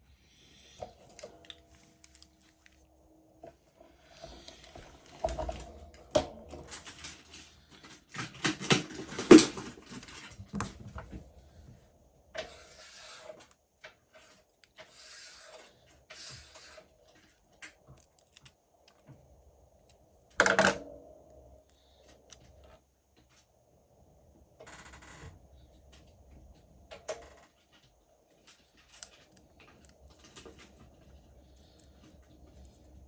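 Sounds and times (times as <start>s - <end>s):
plastic film rustling: 6.6s - 10.5s
small parts clicking and knocking: 16.2s - 19.2s, 19.8s - 20.9s.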